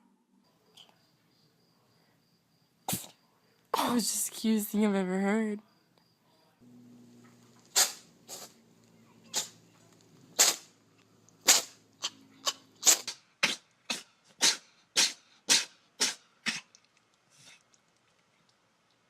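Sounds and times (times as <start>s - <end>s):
cat sneezing: 2.9s - 3.2s, 7.7s - 8.6s, 9.3s - 9.6s, 10.4s - 10.7s, 11.4s - 16.7s.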